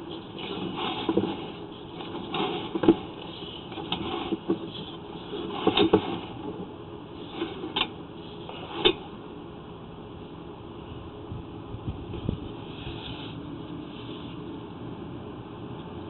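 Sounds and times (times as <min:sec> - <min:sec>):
steady low noise: 0:00.0 - 0:16.0.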